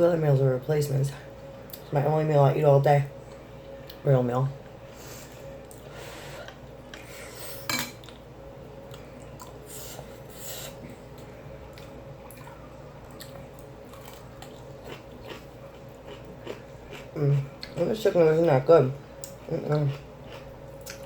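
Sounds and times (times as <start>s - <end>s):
steady low hum: 0.0s - 21.0s
chewing: 11.2s - 17.8s.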